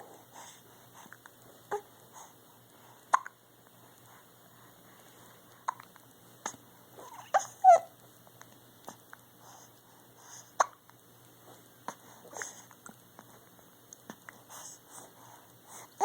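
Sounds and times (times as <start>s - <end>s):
baby hiccuping: 3.1s - 3.4s, 5.6s - 5.8s, 10.6s - 10.8s
squeaky baby vocal noise: 7.0s - 8.0s.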